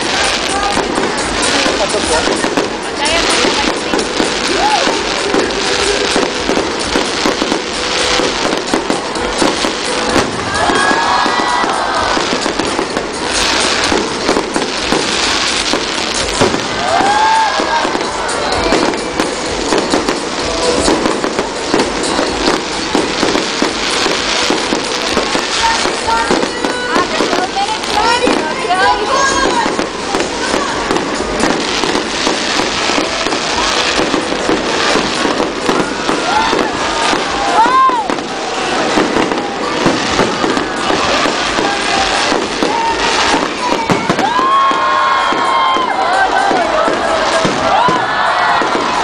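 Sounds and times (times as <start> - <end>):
fireworks bangs and crackling: 0.0 - 49.0.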